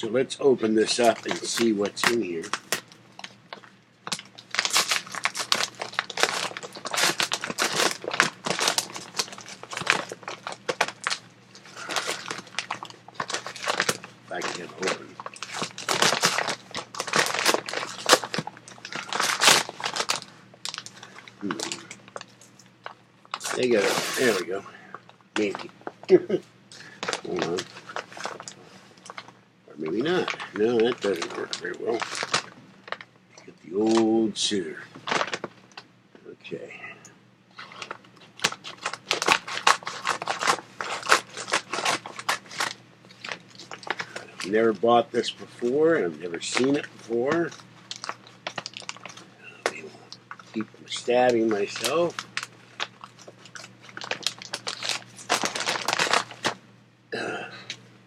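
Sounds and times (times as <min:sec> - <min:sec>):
bag crinkling and rustling: 0:00.5 - 0:35.8, 0:37.5 - 0:56.6.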